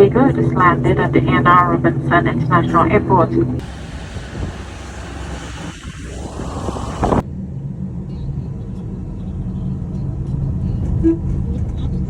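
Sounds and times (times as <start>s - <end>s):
vehicle low rumble: 0.0s - 12.0s
loud hiss with rising pitch: 3.6s - 7.2s.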